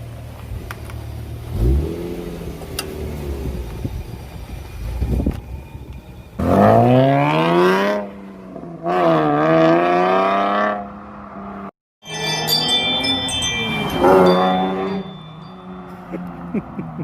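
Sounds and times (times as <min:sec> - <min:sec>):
car engine revving: 0:01.4 - 0:05.3
steady high tones: 0:12.0 - 0:16.6.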